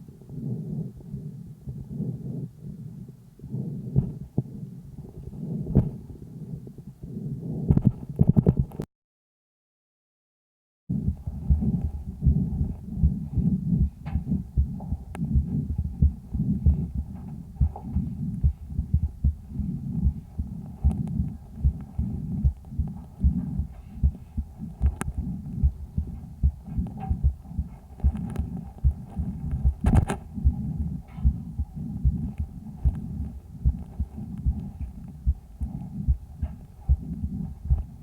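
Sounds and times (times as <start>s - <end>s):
breath sounds: 0.0s - 8.2s, 10.9s - 38.0s
rapid heartbeat throb: 0.3s - 8.0s, 10.9s - 38.0s
sharp clicks: 29.4s - 30.3s.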